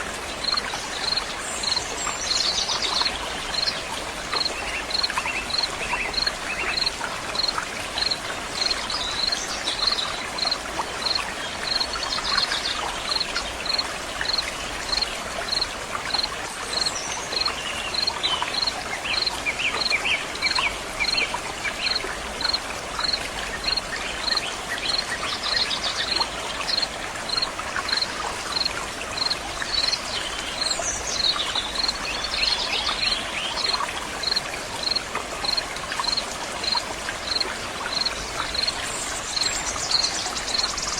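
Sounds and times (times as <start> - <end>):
stream water flowing: 0.0 - 40.9
high insect chirp: 4.4 - 12.0, 13.1 - 19.9.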